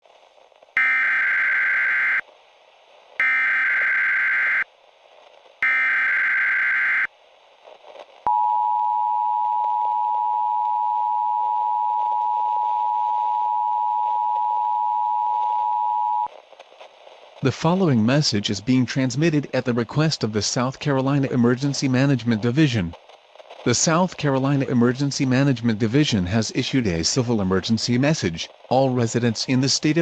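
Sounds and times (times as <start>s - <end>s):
buzzing digital data bursts: 0.8s - 2.2s, 3.2s - 4.6s, 5.6s - 7.1s
two-tone attention signal: 0.8s - 2.2s, 3.2s - 4.6s, 5.6s - 7.1s.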